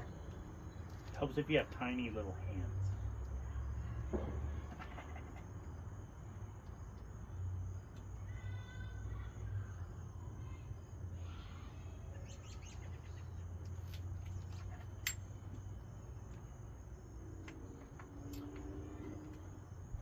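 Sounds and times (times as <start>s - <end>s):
faint bird chirps: 8.2s - 14.8s.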